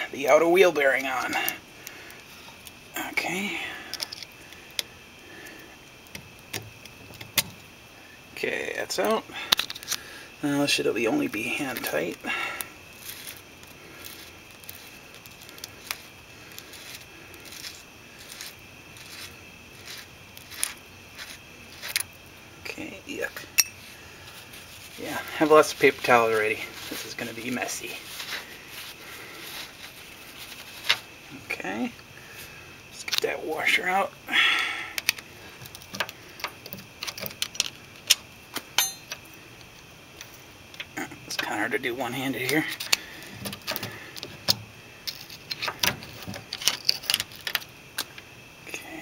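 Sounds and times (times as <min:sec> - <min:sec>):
small metal clicks: 0:03.9 - 0:07.7, 0:09.5 - 0:10.0, 0:13.0 - 0:22.2, 0:35.0 - 0:41.5, 0:42.4 - 0:48.3
small metal clicks and taps: 0:06.1 - 0:07.6, 0:35.0 - 0:40.9.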